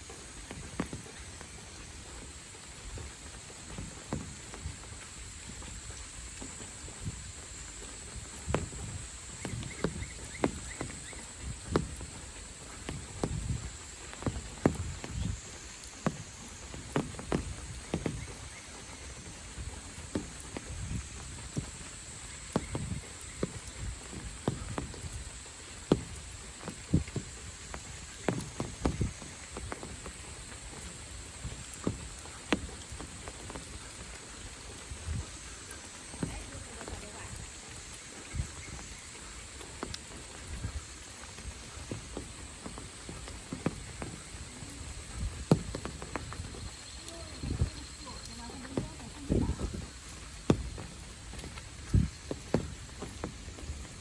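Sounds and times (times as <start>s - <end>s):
heavy raindrops tapping: 0.0s - 54.0s
high-pitched insect calls: 3.6s - 31.2s.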